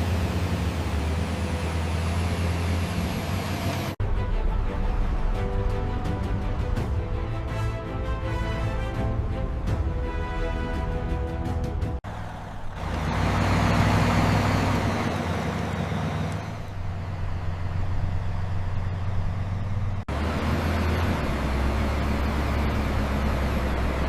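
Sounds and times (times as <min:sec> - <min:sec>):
diesel engines droning: 0:00.0 - 0:06.9, 0:11.9 - 0:24.0.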